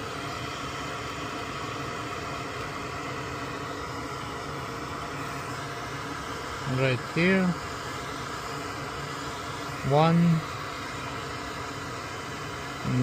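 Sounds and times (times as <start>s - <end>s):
extractor fan whirring: 0.0s - 13.0s.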